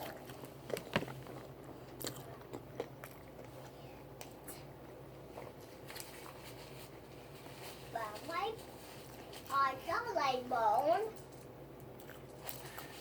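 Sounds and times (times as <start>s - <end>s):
chewing with mouth clicks: 0.0s - 4.6s, 11.8s - 13.0s.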